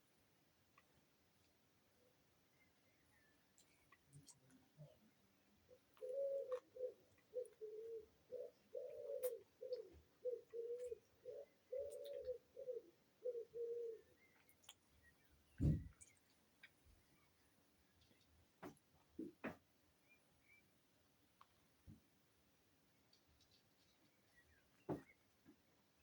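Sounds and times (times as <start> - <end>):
pigeon cooing: 5.7 - 14.2.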